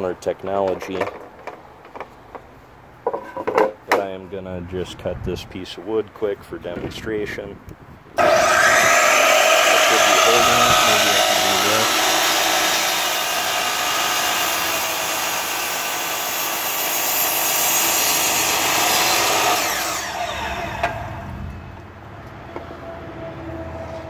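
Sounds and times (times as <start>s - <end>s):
saw blade winding down: 8.2s - 21.6s
miter saw cutting wood: 8.2s - 21.7s.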